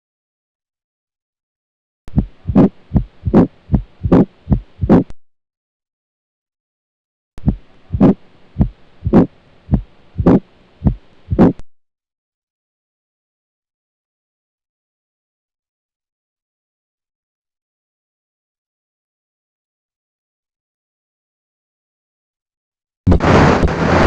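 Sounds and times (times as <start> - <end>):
heartbeat through stethoscope: 2.1 - 5.2, 7.4 - 11.6.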